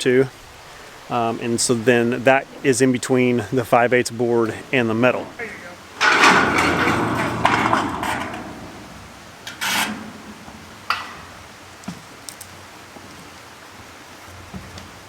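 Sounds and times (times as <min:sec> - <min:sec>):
roofing materials scraping: 0:00.6 - 0:12.4.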